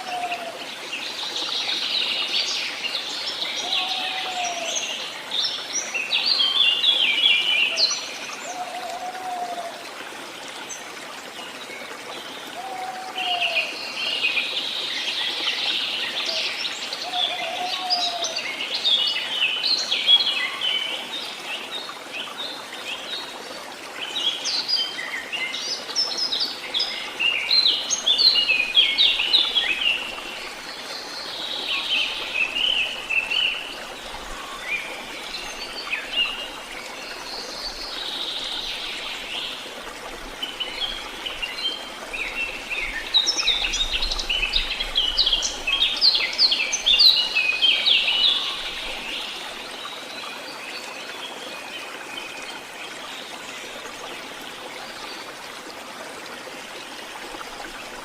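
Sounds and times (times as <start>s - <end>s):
running water hiss: 0.0s - 58.0s
songbirds singing: 24.1s - 55.2s.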